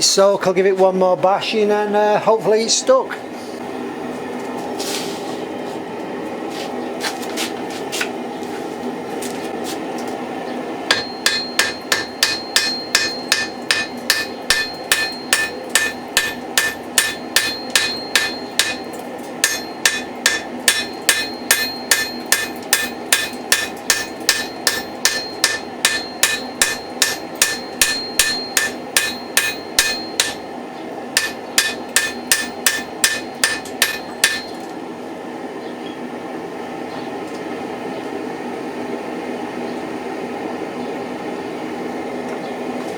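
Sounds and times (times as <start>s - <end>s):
hammer ringing on anvil: 10.9s - 30.5s, 31.2s - 34.6s.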